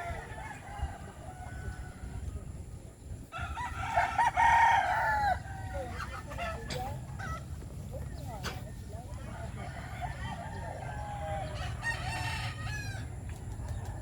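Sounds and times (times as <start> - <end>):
rooster crowing: 0.0 - 2.2, 3.3 - 7.0, 9.2 - 13.1
chicken clucking: 5.7 - 11.6.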